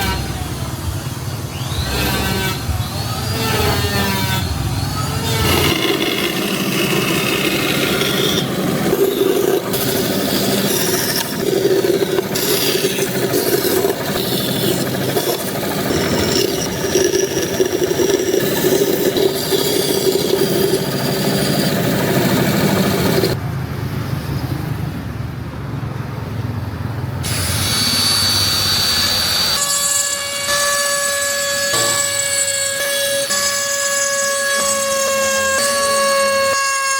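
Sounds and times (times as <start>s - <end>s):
power tools cutting wood: 0.0s - 23.4s, 27.2s - 36.9s
steady motor hum: 0.0s - 23.4s
held steady tones: 4.5s - 23.4s.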